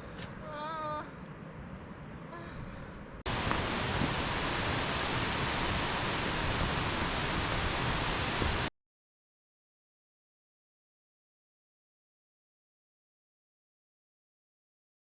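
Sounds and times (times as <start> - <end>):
loud rushing noise: 3.3 - 8.7.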